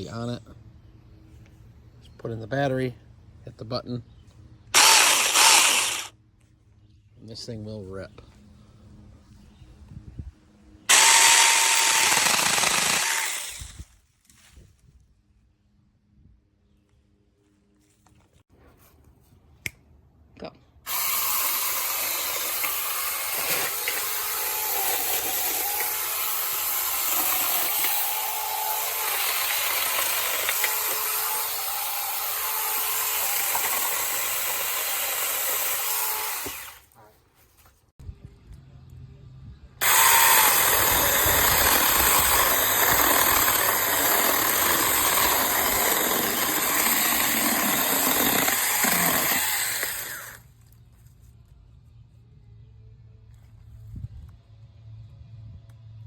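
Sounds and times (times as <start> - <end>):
cordless mini chainsaw running: 4.8 - 6.1, 10.9 - 13.9, 20.9 - 36.8, 39.8 - 50.4.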